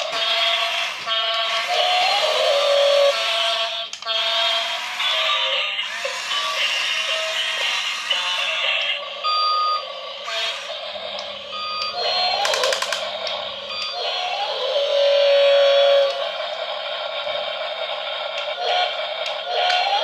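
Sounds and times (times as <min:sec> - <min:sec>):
rapid clicks: 0:12.3 - 0:13.4.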